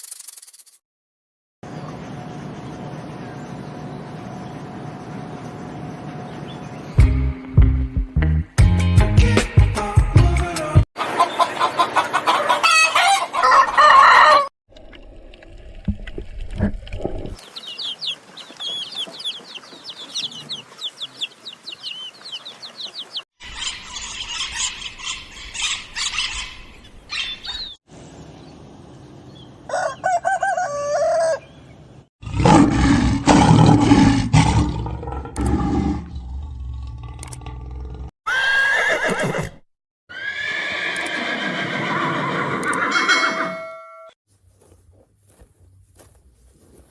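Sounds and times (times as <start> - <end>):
hens clucking: 11.0 - 14.5, 17.4 - 25.7
rooster crowing: 12.3 - 14.5, 29.7 - 31.5.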